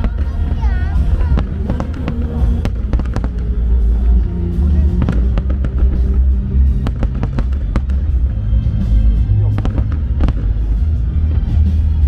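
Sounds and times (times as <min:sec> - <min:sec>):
fireworks bangs and crackles: 0:00.0 - 0:12.0
loud music with heavy bass: 0:00.0 - 0:12.0.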